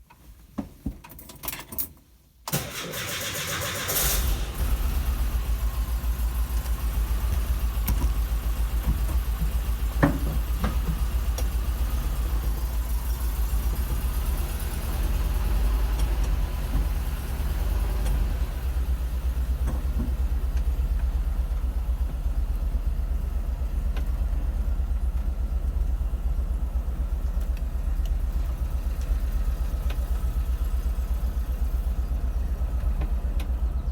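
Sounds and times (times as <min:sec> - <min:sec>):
engine cranking: 0:02.5 - 0:19.0
engine idling with rhythmic knock: 0:04.4 - 0:33.9.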